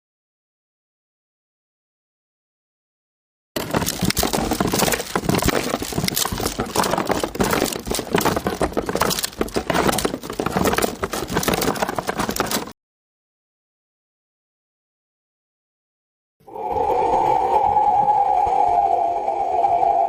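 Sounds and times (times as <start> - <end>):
dense crinkling and crackling: 3.6 - 12.8.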